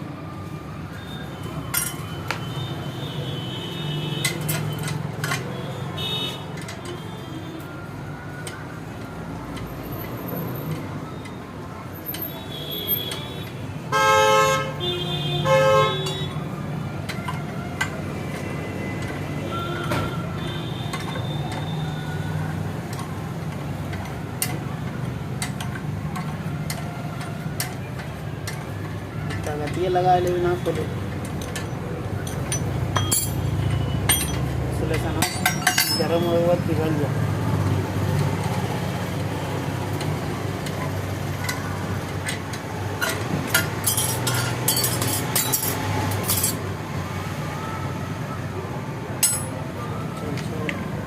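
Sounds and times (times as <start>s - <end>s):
low hum of traffic: 0.0s - 51.0s
metal tools clinking and scraping: 1.6s - 2.4s, 4.1s - 5.6s, 22.8s - 36.6s, 39.9s - 46.7s, 49.2s - 49.6s
bright metallic rattles: 31.3s - 36.4s.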